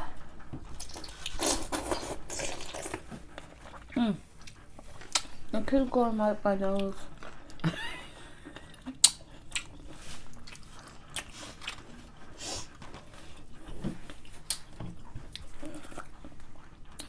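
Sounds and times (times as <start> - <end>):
wet chewing: 0.1 - 17.0
pickle crunching: 0.7 - 5.4.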